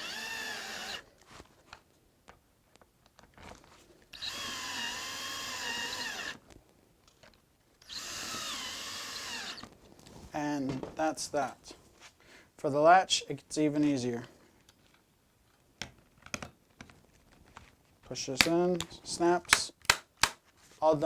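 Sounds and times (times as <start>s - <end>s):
electric drill whine: 0.0s - 1.0s, 4.2s - 6.4s, 7.8s - 9.7s.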